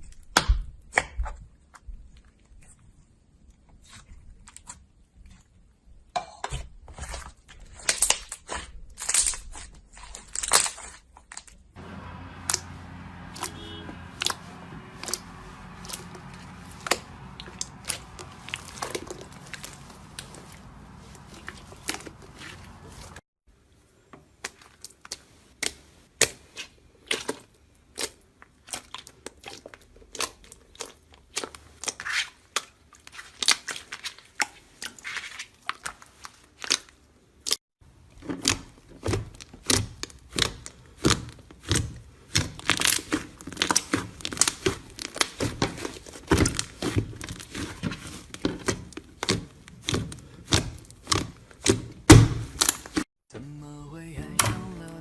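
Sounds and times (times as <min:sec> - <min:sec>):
slime crackling and popping: 0:41.6 - 0:51.8.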